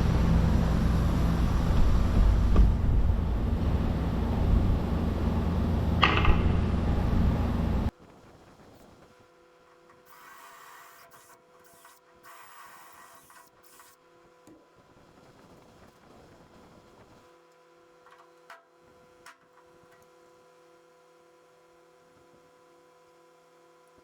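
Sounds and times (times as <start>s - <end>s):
electrical hum: 0.0s - 9.0s.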